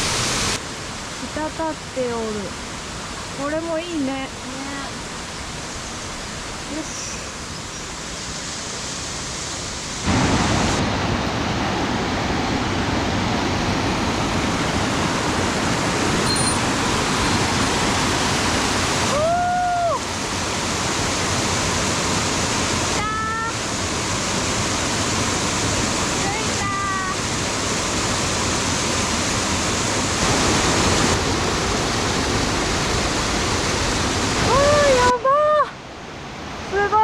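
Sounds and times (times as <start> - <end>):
waterfall rushing: 0.0 - 37.0.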